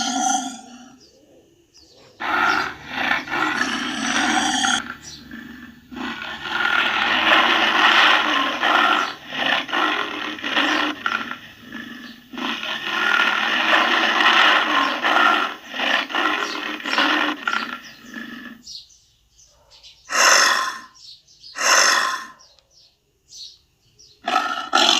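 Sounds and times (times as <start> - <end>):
tiger roaring and growling: 0.0 - 1.0, 2.2 - 18.7, 20.1 - 21.0, 21.6 - 22.4, 24.2 - 24.9.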